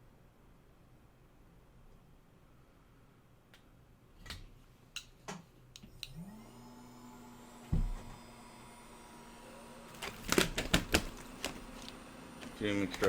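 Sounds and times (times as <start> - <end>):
extractor fan humming: 5.9 - 13.0
loud thump: 7.7 - 8.2.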